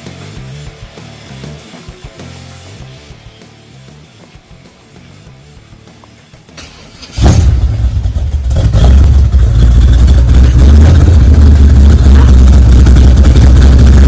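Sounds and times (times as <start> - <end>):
loud car engine rumbling: 0.0 - 14.0.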